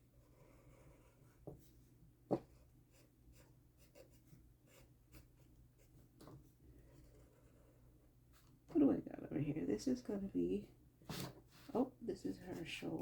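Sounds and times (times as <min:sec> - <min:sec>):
pencil scratching on paper: 0:00.1 - 0:08.5.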